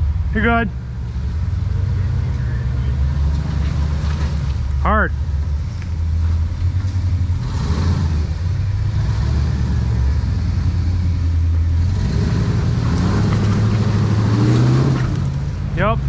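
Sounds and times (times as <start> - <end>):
off-road vehicle engine revving: 0.0 - 16.0.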